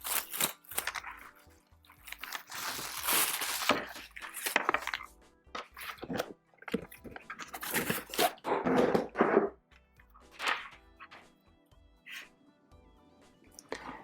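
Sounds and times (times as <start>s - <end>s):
packaging rustling and crinkling: 0.0s - 8.5s
quiet background music: 0.0s - 14.0s.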